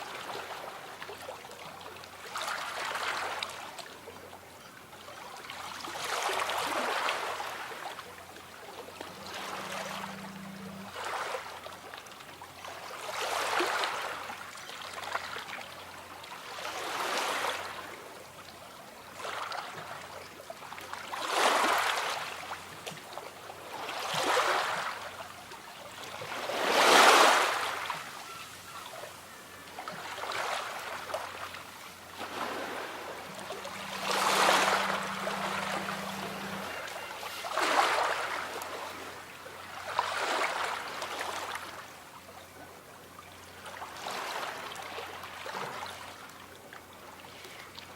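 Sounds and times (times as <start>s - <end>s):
small waves washing on shore: 5.0s - 47.9s.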